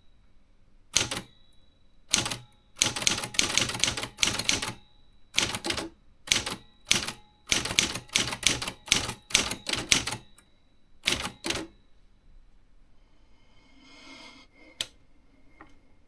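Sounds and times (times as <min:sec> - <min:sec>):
manual typewriter typing: 0:00.9 - 0:01.3, 0:02.1 - 0:04.8, 0:05.4 - 0:10.4, 0:11.0 - 0:11.8.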